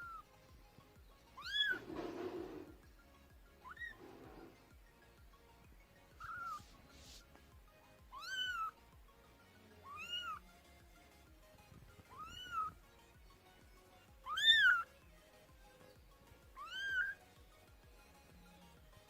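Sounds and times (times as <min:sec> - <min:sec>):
kitten meowing: 0:01.4 - 0:01.9, 0:03.6 - 0:04.0, 0:06.2 - 0:06.6, 0:08.1 - 0:08.8, 0:09.8 - 0:10.4, 0:12.1 - 0:12.8, 0:14.2 - 0:14.9, 0:16.6 - 0:17.2.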